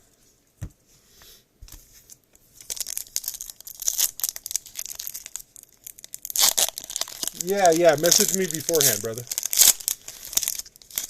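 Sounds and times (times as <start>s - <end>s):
foil wrapper crinkling and tearing: 2.6s - 11.0s.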